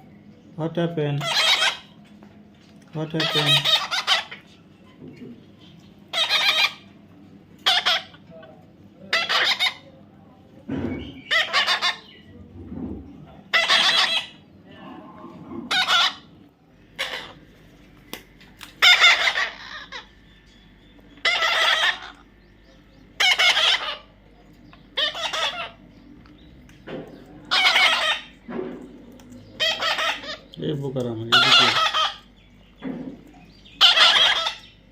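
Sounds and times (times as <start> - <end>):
parrot screeching: 1.2 - 2.0, 3.1 - 4.4, 6.1 - 6.9, 7.6 - 8.2, 9.1 - 9.9, 11.2 - 12.2, 13.5 - 14.4, 15.7 - 16.4, 17.0 - 17.4, 18.8 - 20.1, 21.2 - 22.3, 23.2 - 24.2, 24.9 - 25.8, 27.5 - 28.4, 29.6 - 30.5, 31.3 - 32.3, 33.7 - 34.8.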